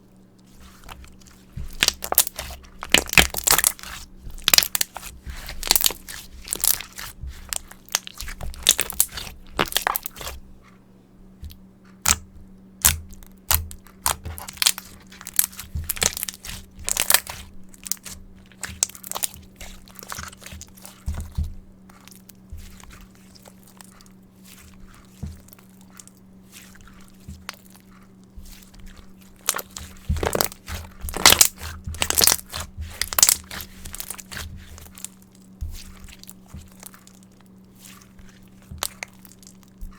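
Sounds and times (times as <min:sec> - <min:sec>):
slime squeezed by hand: 0:00.6 - 0:10.4.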